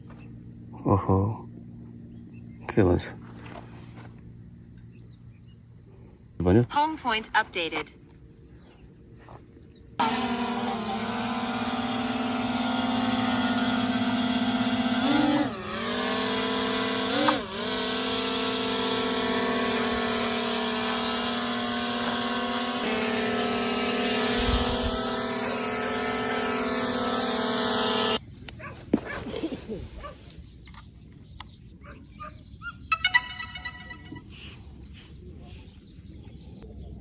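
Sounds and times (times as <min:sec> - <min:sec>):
drone propellers buzzing: 0:10.0 - 0:28.2.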